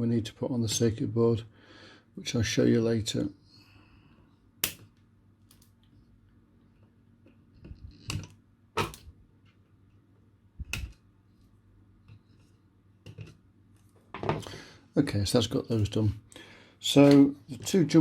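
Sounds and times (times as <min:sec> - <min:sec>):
wire cutters snipping: 0:04.6 - 0:04.9, 0:10.7 - 0:11.0.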